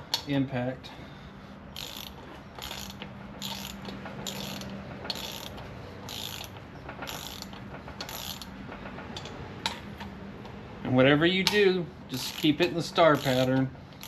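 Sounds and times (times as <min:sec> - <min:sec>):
socket ratchet clicking: 0:01.8 - 0:08.5, 0:11.4 - 0:13.7.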